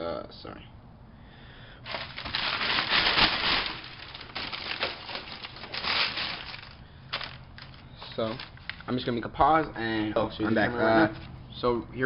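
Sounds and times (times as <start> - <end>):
packaging crinkling and rustling: 1.9 - 9.0.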